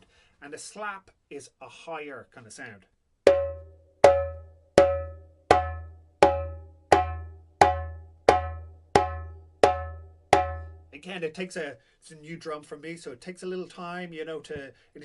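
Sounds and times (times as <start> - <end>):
hand drum slaps: 3.3 - 10.8.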